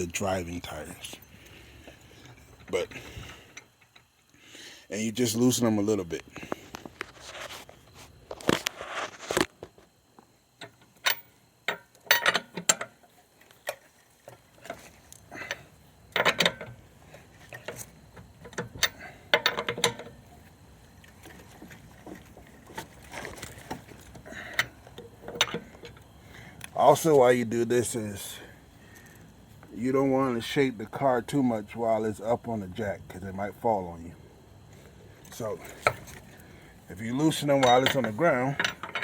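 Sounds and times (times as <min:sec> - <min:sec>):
tire iron clanking on lug nuts: 0:10.6 - 0:13.0, 0:14.6 - 0:20.4, 0:37.3 - 0:39.0.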